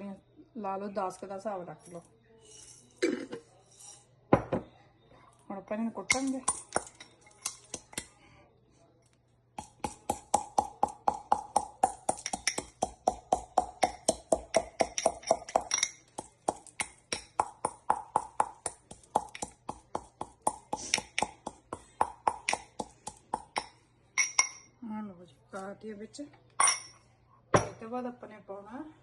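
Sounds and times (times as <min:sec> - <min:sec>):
pestle pounding spices in mortar: 0:09.6 - 0:23.8.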